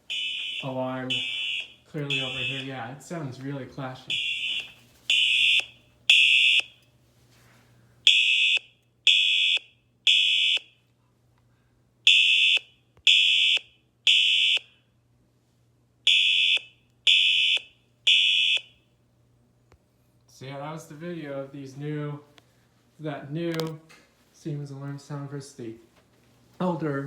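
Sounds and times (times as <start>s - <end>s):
fire alarm horn blasts: 0.0s - 3.0s, 4.0s - 6.8s, 8.1s - 10.8s, 12.1s - 14.8s, 16.1s - 18.8s.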